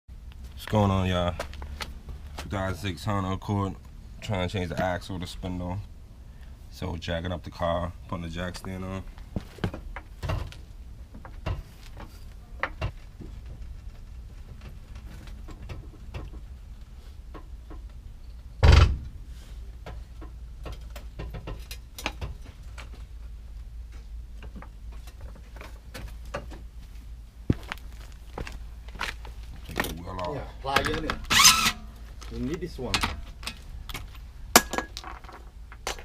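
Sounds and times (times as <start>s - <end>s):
low steady hum: 0.1s - 36.0s
heavy thump: 18.6s - 19.2s
metallic clicks and knocks: 19.8s - 22.9s.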